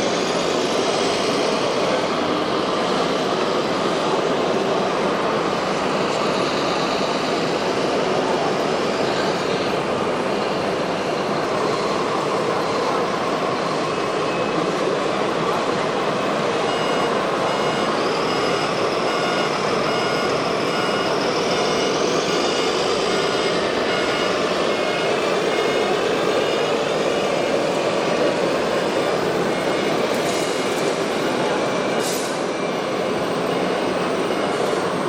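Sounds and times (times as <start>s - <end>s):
rc truck motor and gear whine: 16.2s - 35.0s
high backup beeper: 16.4s - 35.0s.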